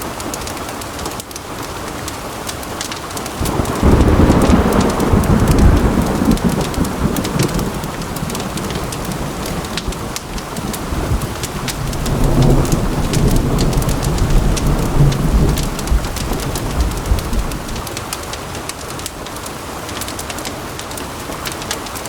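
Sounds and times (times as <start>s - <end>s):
heavy rain: 0.0s - 22.0s
thunder rumbling: 3.4s - 17.9s.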